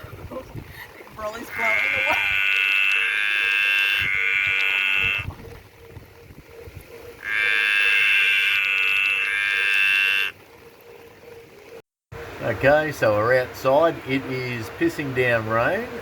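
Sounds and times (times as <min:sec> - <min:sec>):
tree frog calling: 0:01.2 - 0:11.8.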